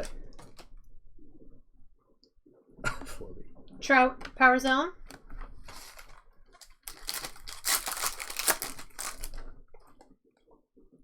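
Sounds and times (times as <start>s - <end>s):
foil wrapper crinkling: 5.7s - 9.5s.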